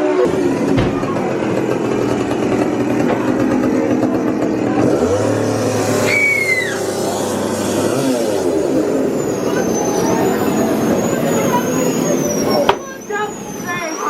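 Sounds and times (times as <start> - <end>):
engine running and revving: 0.0 - 14.0
short falling squeal: 6.0 - 6.9, 8.9 - 14.0.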